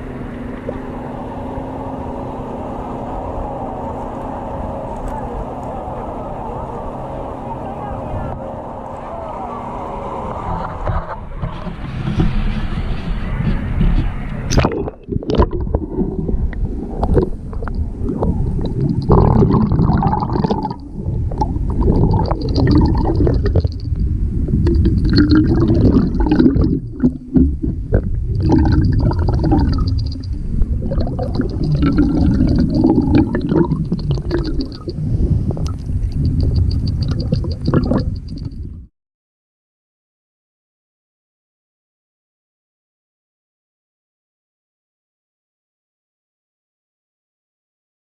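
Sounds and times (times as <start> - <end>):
water sloshing and gurgling: 0.0 - 5.8, 13.5 - 38.9.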